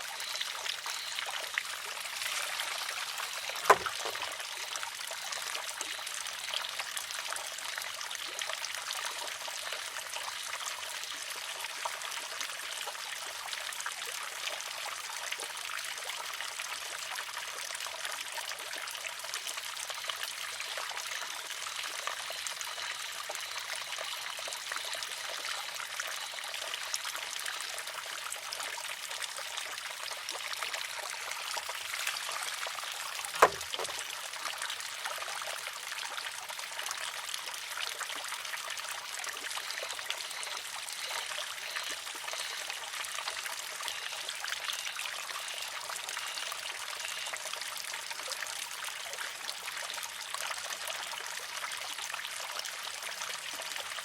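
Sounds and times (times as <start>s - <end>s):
water trickling from spout: 0.0s - 54.0s
bamboo arm clacking on rock: 2.2s - 4.4s, 33.3s - 34.0s.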